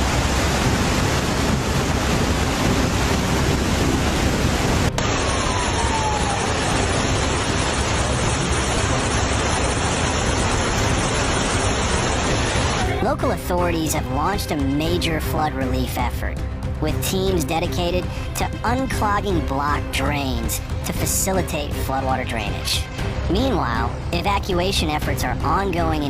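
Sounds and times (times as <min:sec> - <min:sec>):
rushing water: 0:00.0 - 0:13.0.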